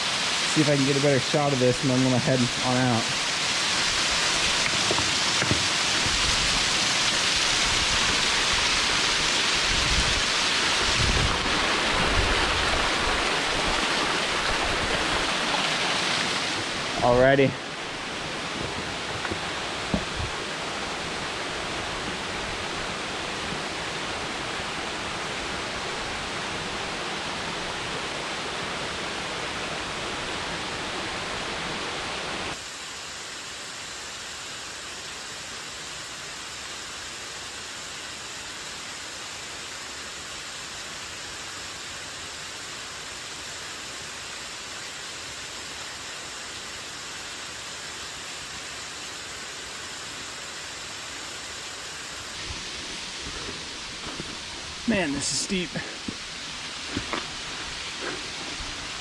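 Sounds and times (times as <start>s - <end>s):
waterfall rushing: 0.0s - 32.6s, 44.6s - 59.0s.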